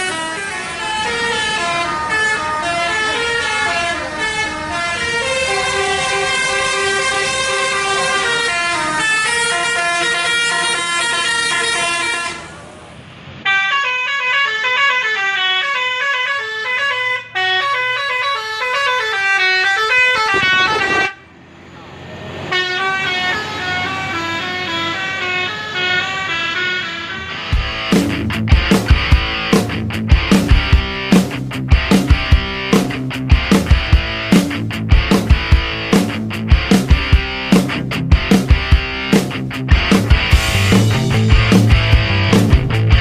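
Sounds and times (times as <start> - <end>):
musical bus air horns: 0.0 - 21.5, 22.3 - 42.6.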